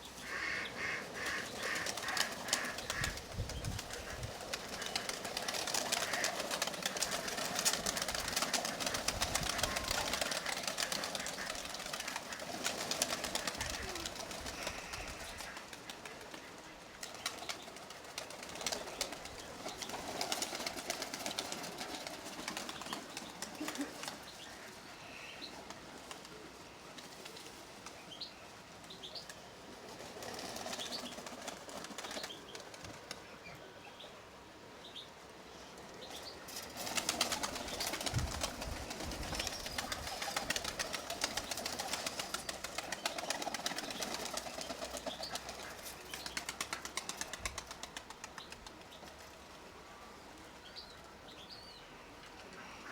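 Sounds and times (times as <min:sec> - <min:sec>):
pigeon wings flapping: 0:00.8 - 0:24.3, 0:29.8 - 0:33.3, 0:36.5 - 0:49.4.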